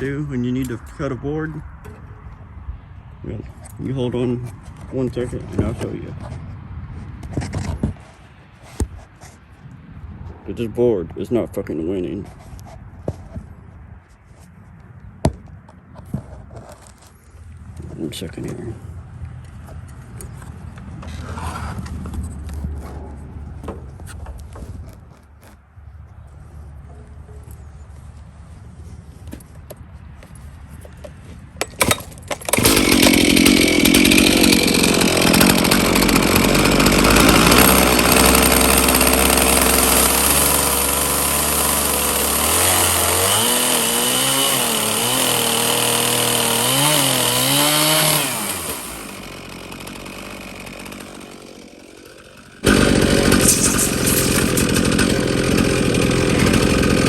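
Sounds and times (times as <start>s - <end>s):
chainsaw cutting wood: 31.6s - 57.0s.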